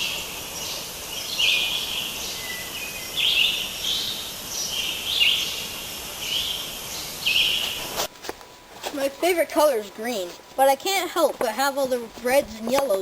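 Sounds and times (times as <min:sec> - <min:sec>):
birds chirping: 0:00.0 - 0:08.0.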